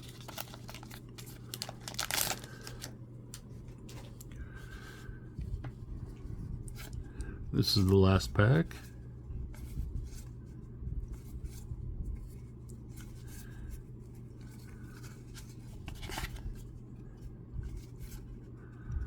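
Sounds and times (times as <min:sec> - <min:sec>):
foil card pack rubbing: 0:00.0 - 0:02.9
steady low hum: 0:00.0 - 0:19.0.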